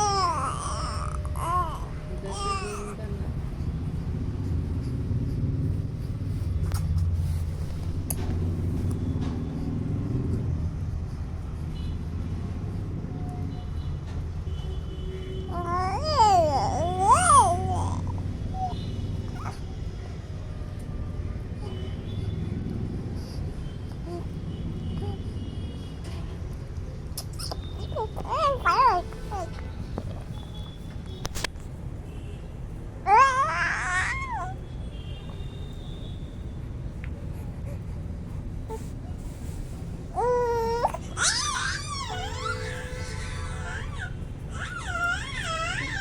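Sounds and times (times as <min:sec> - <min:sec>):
baby cooing: 0:00.0 - 0:03.0, 0:15.5 - 0:19.6, 0:27.4 - 0:29.5, 0:33.1 - 0:34.6, 0:40.1 - 0:46.0.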